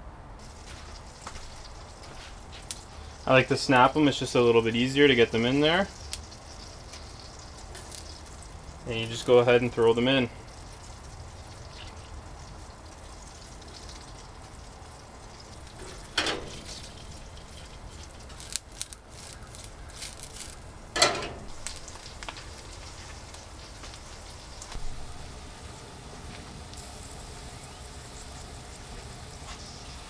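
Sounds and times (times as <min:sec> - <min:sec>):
food sizzling in butter: 0:00.4 - 0:30.0.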